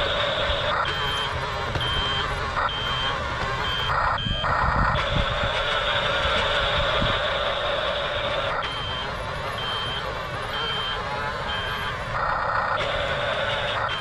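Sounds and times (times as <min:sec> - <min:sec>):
back-up beeper: 0:00.0 - 0:14.0
toy motor and gears humming: 0:00.0 - 0:14.0.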